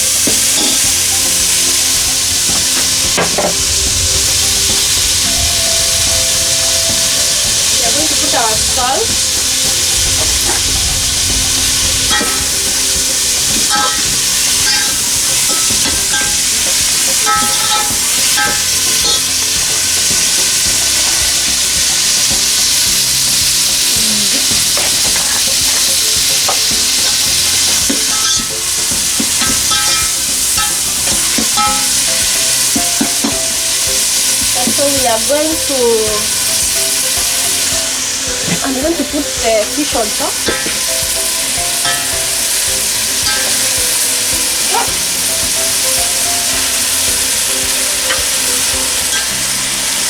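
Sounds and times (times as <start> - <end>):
vegetables sizzling in oil: 0.0 - 50.0
scrapes and clinks in pot: 12.1 - 21.5, 24.6 - 34.8.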